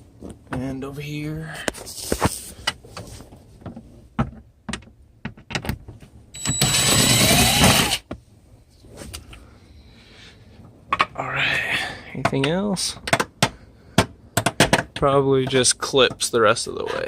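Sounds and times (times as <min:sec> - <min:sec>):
power driver motor whine: 0:06.4 - 0:08.0.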